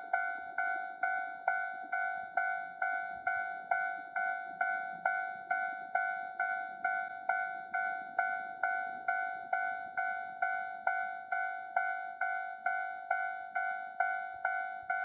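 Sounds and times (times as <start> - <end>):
level-crossing warning bell dinging: 0.0 - 15.0.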